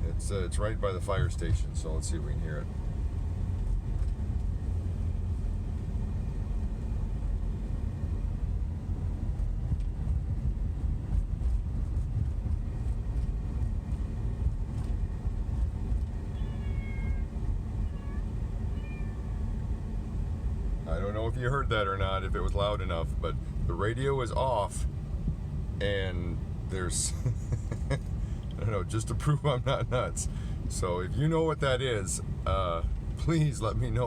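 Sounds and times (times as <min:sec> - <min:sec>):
car cabin road rumble: 0:00.0 - 0:34.0
faint cat-like meows: 0:16.3 - 0:19.4.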